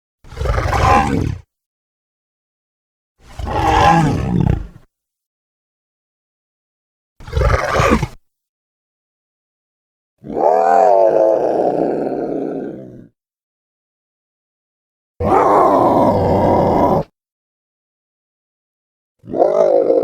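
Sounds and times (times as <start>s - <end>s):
rough flat creature call: 3.3s - 4.8s, 15.2s - 17.1s, 19.2s - 20.0s
rising and sinking creature call: 15.2s - 17.1s.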